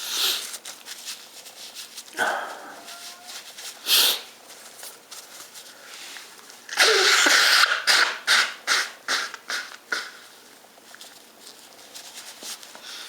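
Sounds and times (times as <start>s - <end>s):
person blowing nose: 0.0s - 0.5s, 3.8s - 4.3s, 6.7s - 10.3s.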